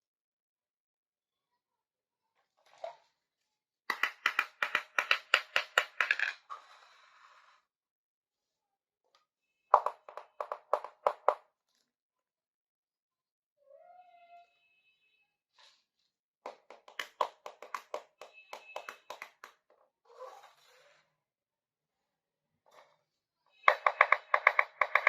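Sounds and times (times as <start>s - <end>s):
toy pieces clicking and tapping: 3.9s - 6.4s, 9.8s - 11.4s, 16.5s - 19.6s, 23.7s - 25.0s.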